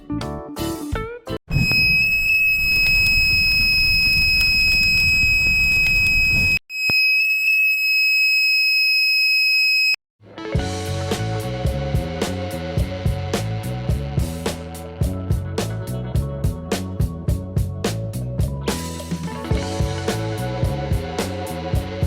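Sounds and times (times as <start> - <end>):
high piercing buzzer alarm: 1.5 - 10.0.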